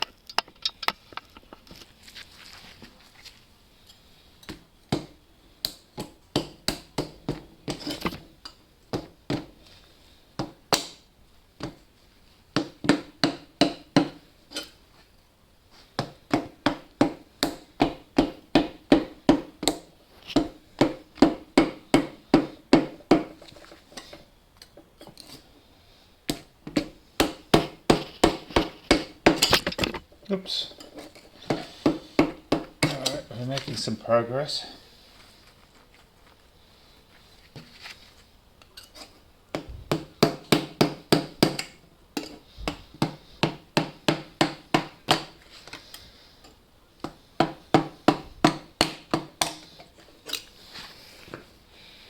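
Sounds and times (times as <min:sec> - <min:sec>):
hammer tapping on a blade: 0:12.6 - 0:14.7, 0:39.6 - 0:45.4, 0:47.0 - 0:49.7.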